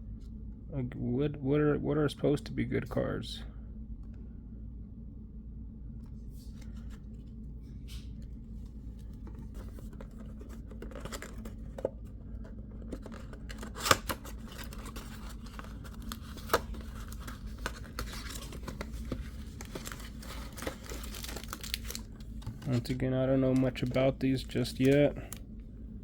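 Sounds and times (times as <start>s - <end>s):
steady low hum: 0.0s - 26.0s
card stock rustling: 8.9s - 25.6s.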